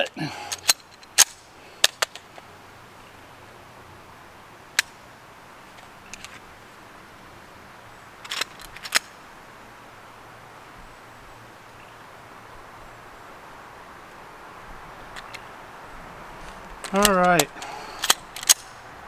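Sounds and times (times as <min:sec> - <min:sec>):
pistol clicking and clacking: 0:00.5 - 0:02.2, 0:16.8 - 0:18.8.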